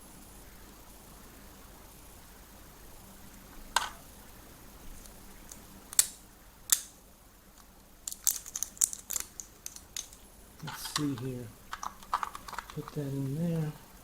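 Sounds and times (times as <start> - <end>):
plastic clicks and taps: 7.6 - 13.0.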